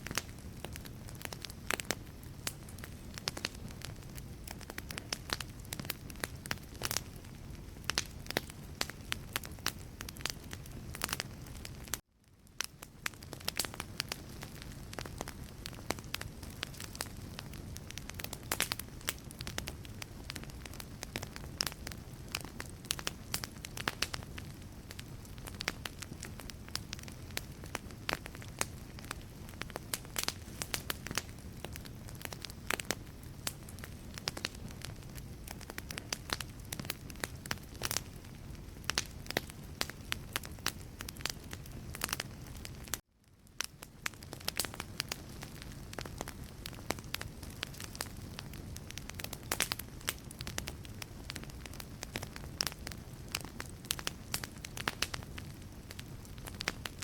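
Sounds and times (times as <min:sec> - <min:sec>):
low rush of flame: 0:00.0 - 0:43.0
fire crackling and popping: 0:00.0 - 0:57.0.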